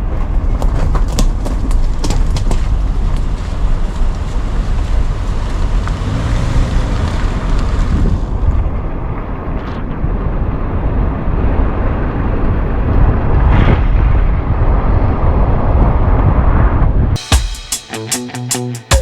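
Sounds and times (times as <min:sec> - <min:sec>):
strong wind buffeting microphone: 0:06.6 - 0:17.2.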